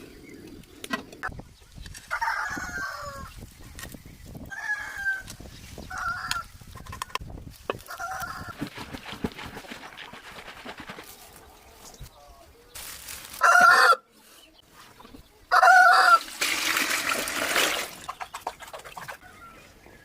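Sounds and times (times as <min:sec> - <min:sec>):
rooster crowing: 0:02.1 - 0:03.3, 0:13.4 - 0:14.0, 0:15.5 - 0:16.3
hens clucking: 0:17.3 - 0:19.4.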